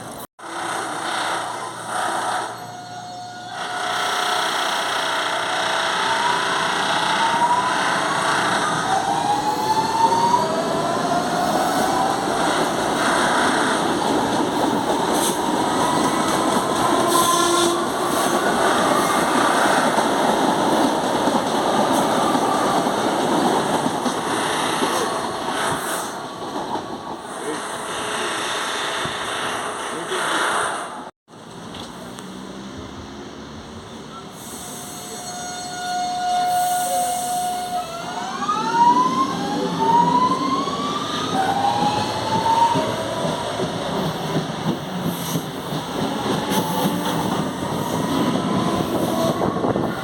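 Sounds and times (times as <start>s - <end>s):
train motor whine: 0.4s - 20.1s
rumble of moving train: 10.4s - 50.0s.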